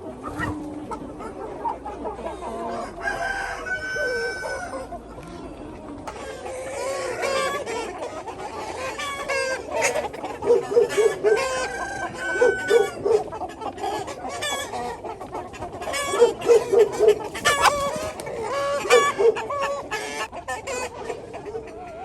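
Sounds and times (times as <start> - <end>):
chickens clucking: 0.0 - 22.0.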